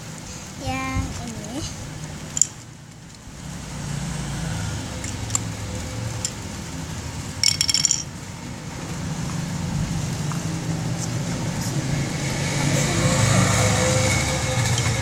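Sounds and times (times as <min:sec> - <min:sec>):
low steady hum: 0:00.0 - 0:15.0
clinking rattle: 0:07.4 - 0:08.1.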